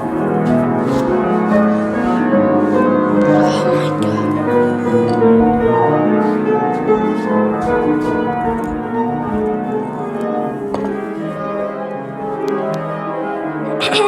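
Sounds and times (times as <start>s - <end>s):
piano playing: 0.0s - 14.0s.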